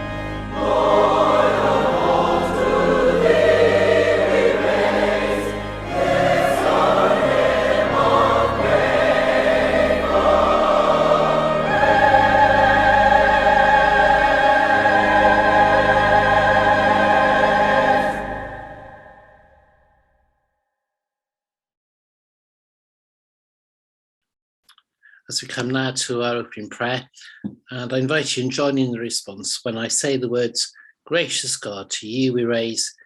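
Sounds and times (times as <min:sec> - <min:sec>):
choir singing a hymn: 0:00.0 - 0:19.6.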